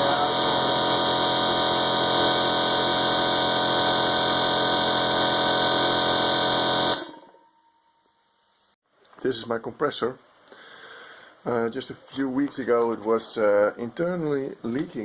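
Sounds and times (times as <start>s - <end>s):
electric air compressor humming: 0.0s - 7.4s.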